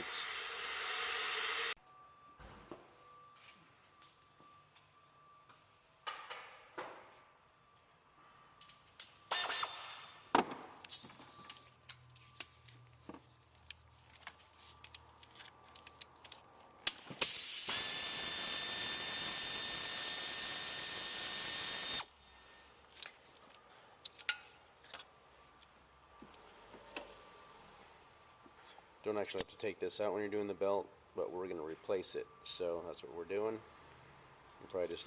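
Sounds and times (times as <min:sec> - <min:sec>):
power tool whining: 0:00.0 - 0:01.8, 0:17.2 - 0:22.1.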